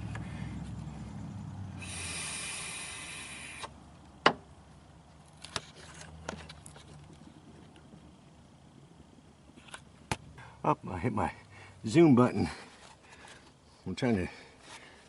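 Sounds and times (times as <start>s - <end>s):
hiss of breath: 1.8s - 3.7s.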